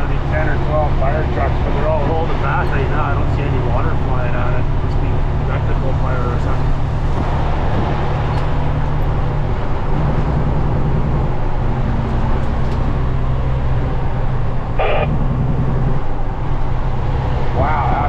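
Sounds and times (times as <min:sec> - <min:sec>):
car engine and road noise: 0:00.0 - 0:18.0.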